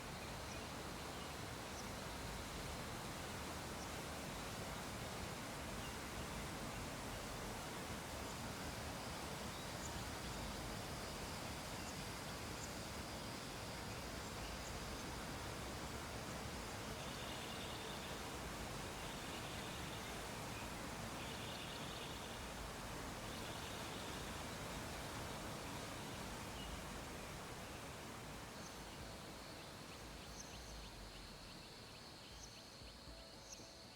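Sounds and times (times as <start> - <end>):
faint background hiss: 0.0 - 33.9.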